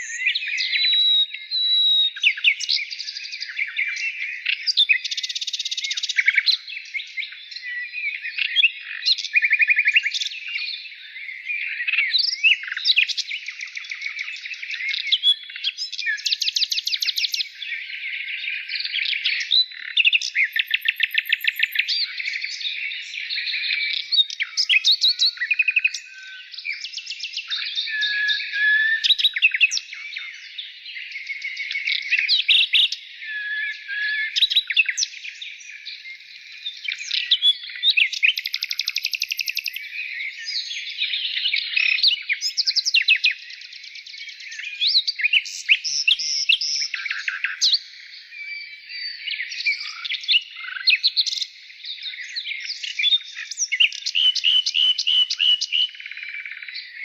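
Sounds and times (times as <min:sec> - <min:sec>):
songbirds chirping and singing: 0:00.0 - 0:57.0.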